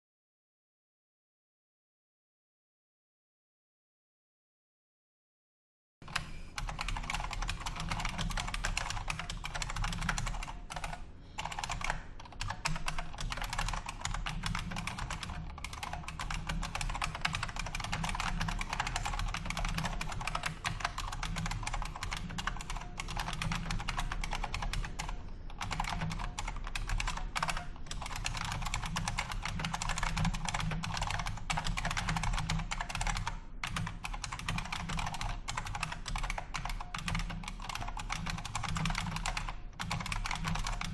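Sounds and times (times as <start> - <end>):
mechanical keyboard typing: 6.1 - 40.9.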